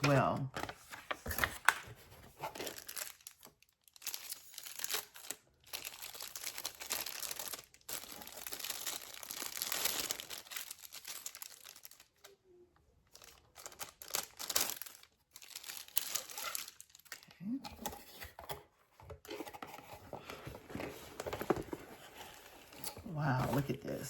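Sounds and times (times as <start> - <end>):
packaging crinkling: 0.0 - 12.4, 13.0 - 17.3.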